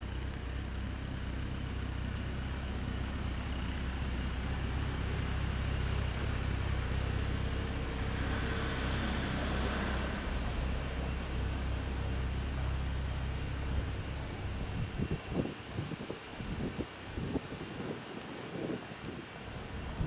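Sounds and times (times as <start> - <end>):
low rumble of vehicles: 0.0 - 20.0.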